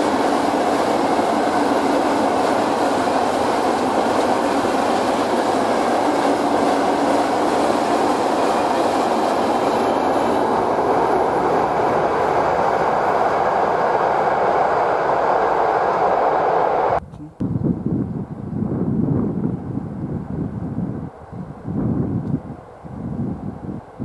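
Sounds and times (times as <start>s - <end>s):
freight train wheels rumbling: 0.0s - 17.0s.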